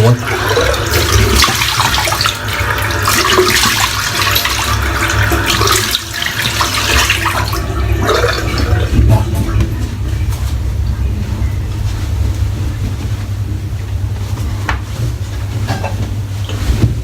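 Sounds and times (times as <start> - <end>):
tap water running into sink: 0.0 - 10.0.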